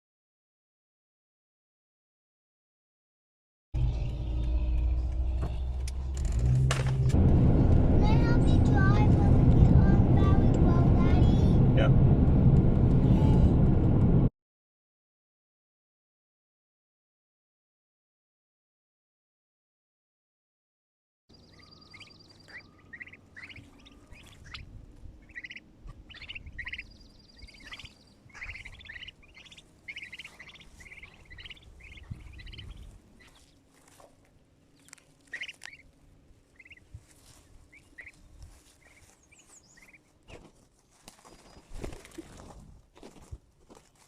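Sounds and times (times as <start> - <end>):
low rumble: 3.8 - 14.3, 23.2 - 33.5
small birds chirping and trilling: 21.3 - 42.1.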